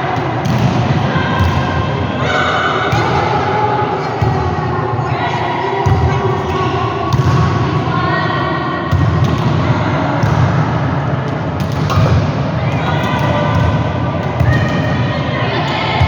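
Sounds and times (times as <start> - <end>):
people's voices: 0.0 - 11.1, 12.0 - 16.0
volleyball thumping: 0.2 - 1.8, 5.8 - 7.8, 11.3 - 14.9.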